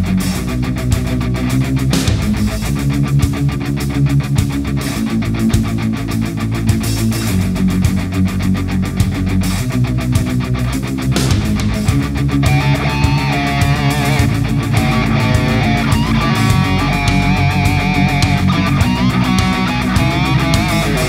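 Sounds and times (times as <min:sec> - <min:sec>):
distorted electric guitar chords: 0:00.0 - 0:21.0
fast driving drum beat: 0:00.0 - 0:21.0.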